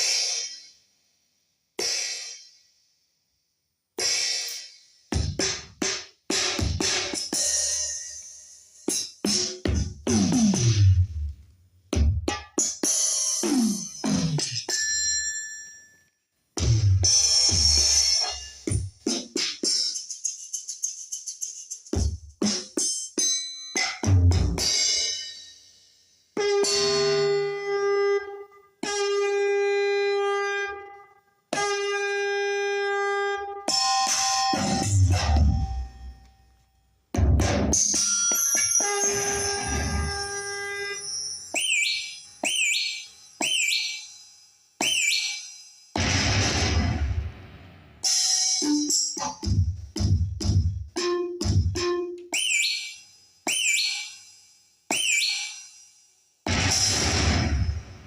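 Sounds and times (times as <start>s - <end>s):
horn-like electronic notes: 38.8s - 44.0s
electronic drum hits: 46.0s - 48.5s, 56.5s - 58.0s
electronic cymbal crash: 46.0s - 48.7s, 56.5s - 58.0s.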